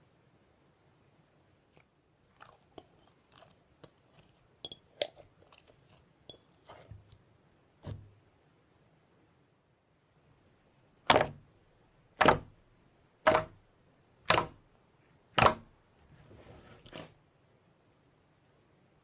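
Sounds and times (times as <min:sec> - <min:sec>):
slime clicking and popping: 0:13.2 - 0:13.6, 0:14.3 - 0:14.6, 0:15.4 - 0:15.6.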